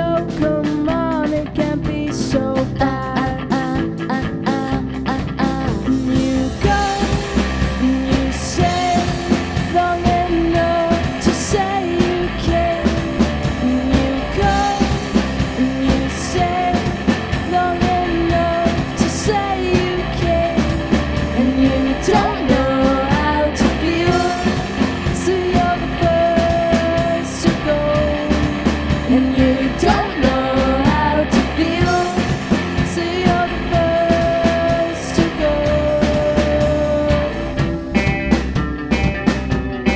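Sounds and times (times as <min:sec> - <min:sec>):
person singing lead melody: 0:00.0 - 0:37.4
pop-rock band playing: 0:00.0 - 0:39.9.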